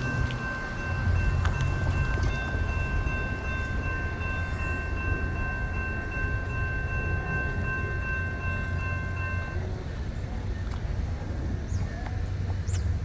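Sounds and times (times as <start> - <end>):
high ringing tones: 0.0 - 9.8
train low rumble: 0.0 - 13.0.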